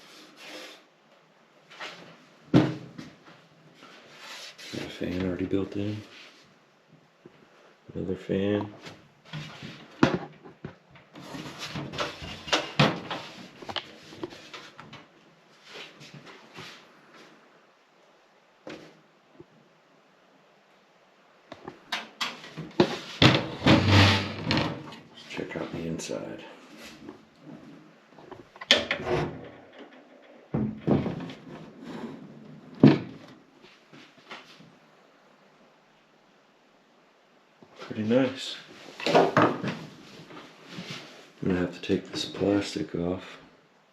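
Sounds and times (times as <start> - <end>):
metal computer case thuds and scraping: 22.8 - 24.8, 30.6 - 31.5.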